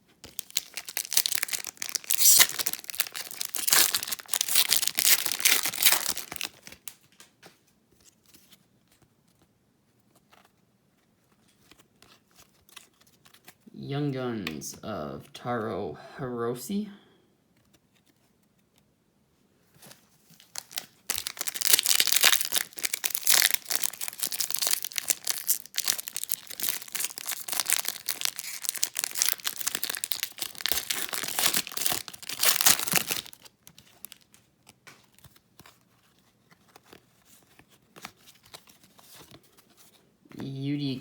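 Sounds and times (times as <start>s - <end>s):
foil wrapper crinkling and tearing: 0.2s - 7.2s, 20.3s - 35.8s.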